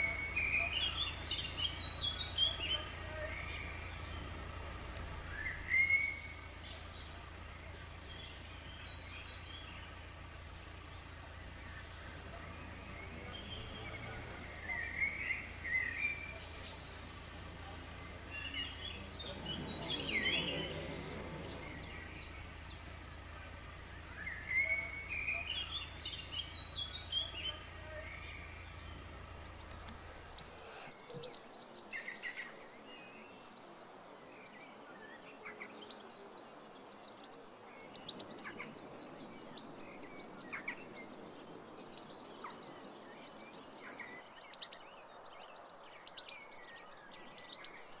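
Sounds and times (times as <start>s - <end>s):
steady low hum: 0.0s - 31.2s
songbirds warbling: 0.0s - 48.0s.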